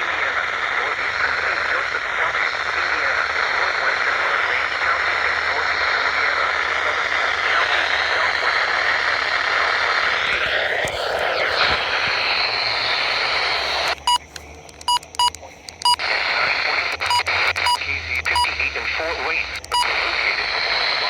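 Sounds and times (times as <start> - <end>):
radio static hiss: 0.0 - 21.0
short broken beeps: 13.9 - 16.1, 17.0 - 18.6, 19.6 - 20.0.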